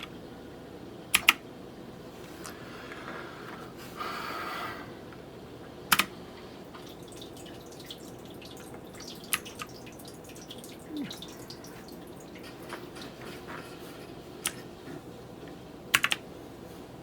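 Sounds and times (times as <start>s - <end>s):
mechanical keyboard clicks: 1.1s - 1.4s, 5.9s - 6.1s, 15.9s - 16.2s.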